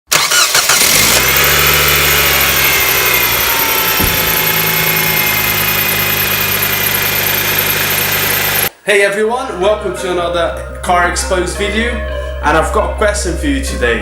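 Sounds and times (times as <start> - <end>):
car engine hum: 0.8 - 8.7.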